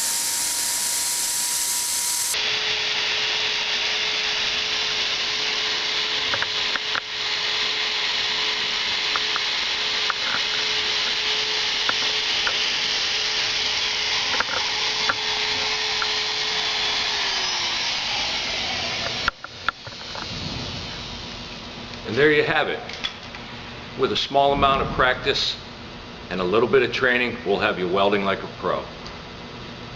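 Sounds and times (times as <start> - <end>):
hot air hissing from welding gun: 0.0 - 2.8
blower humming: 0.0 - 27.5.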